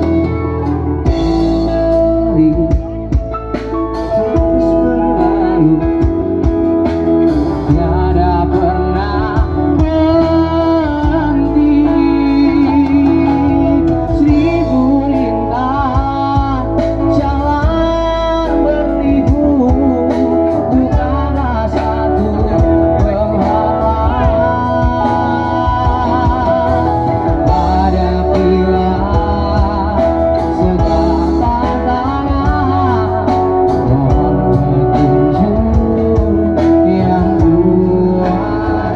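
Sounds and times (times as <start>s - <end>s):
band playing pop song: 0.0s - 38.9s
vibrato lead melody: 0.0s - 38.9s.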